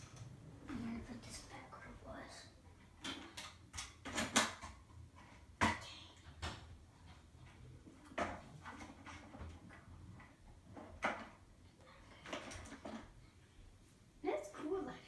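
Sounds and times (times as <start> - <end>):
plastic toy knocking and clattering: 2.9 - 5.8, 8.0 - 11.4, 12.2 - 13.1.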